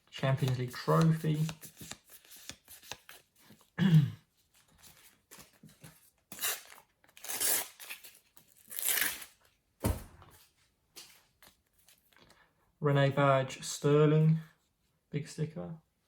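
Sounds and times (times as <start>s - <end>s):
foil packet tearing: 6.3s - 9.4s.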